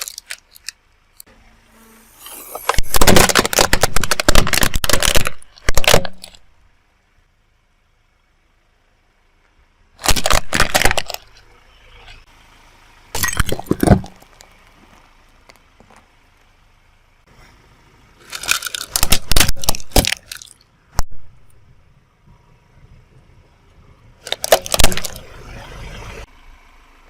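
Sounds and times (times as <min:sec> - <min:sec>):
car tyre crunching brittle objects: 0:00.0 - 0:01.3, 0:02.1 - 0:06.5, 0:10.0 - 0:12.2, 0:13.2 - 0:16.6, 0:18.2 - 0:20.7, 0:24.2 - 0:25.6.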